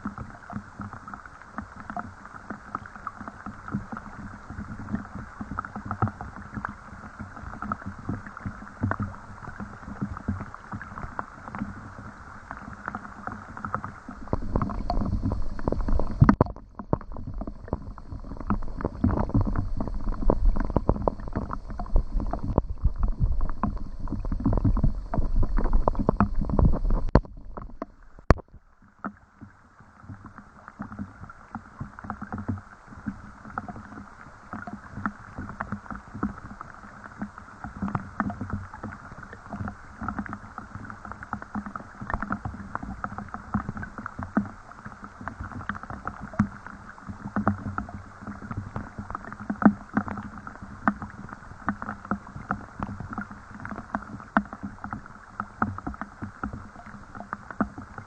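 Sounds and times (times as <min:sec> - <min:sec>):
low rumble with high whine: 0:14.2 - 0:28.8.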